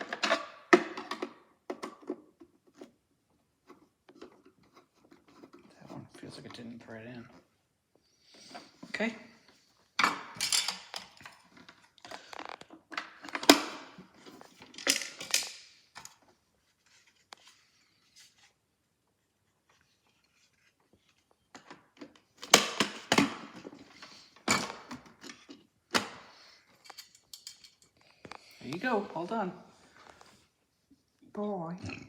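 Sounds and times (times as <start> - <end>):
plastic toy parts handled: 10.4 - 16.3.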